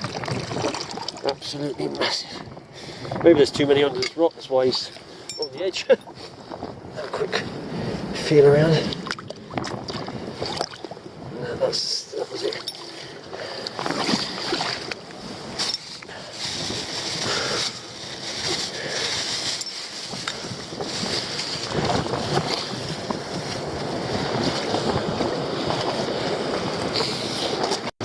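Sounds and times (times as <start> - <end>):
wind gusting across microphone: 0.0 - 27.9
waves washing onto rocky shore: 7.5 - 27.8.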